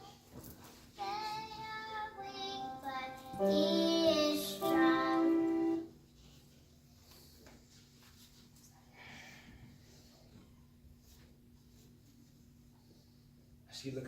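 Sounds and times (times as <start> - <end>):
high voice singing held notes: 2.2 - 5.9.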